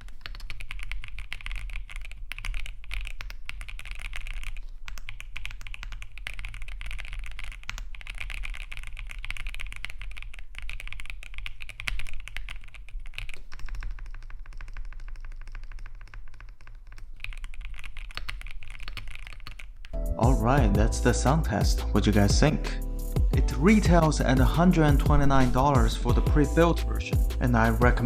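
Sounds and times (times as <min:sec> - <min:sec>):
mechanical keyboard typing: 0:00.0 - 0:20.0, 0:26.7 - 0:28.0.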